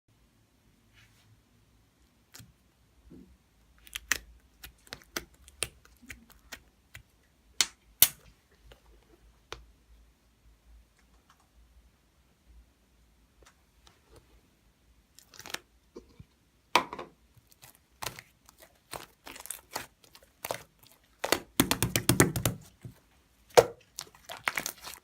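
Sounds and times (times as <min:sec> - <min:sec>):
sharp clicks and taps: 0:21.3 - 0:22.7.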